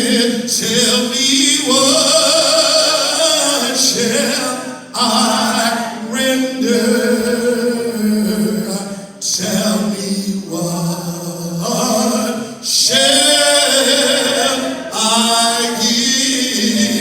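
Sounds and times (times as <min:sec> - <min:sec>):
voices singing gospel song: 0:00.0 - 0:17.0.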